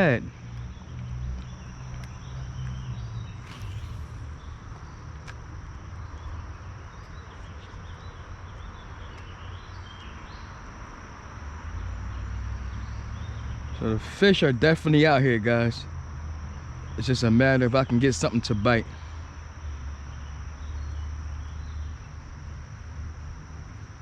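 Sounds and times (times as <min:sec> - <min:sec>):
faint bird chirps: 0:00.0 - 0:10.6
high insect drone: 0:00.0 - 0:24.0
low rumble: 0:03.1 - 0:07.6.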